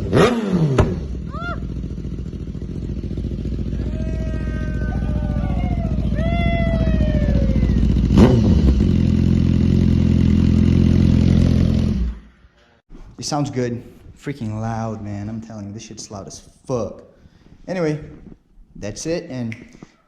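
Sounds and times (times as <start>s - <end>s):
motorcycle engine idling: 0.8s - 12.2s.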